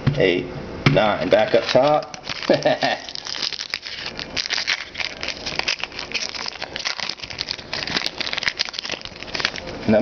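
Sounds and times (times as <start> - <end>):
trading cards rustling and clicking: 1.3 - 9.7.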